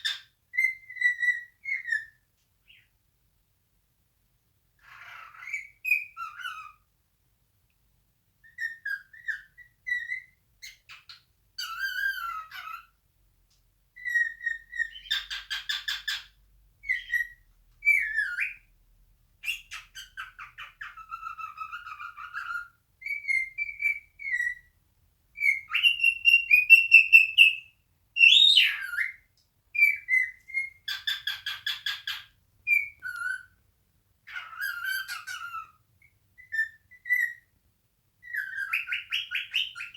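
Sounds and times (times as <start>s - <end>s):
cockatiel whistling: 0.0s - 2.9s, 8.4s - 12.9s, 14.0s - 18.7s, 19.4s - 24.7s, 25.4s - 33.6s, 34.3s - 35.8s, 36.4s - 37.5s, 38.2s - 39.9s.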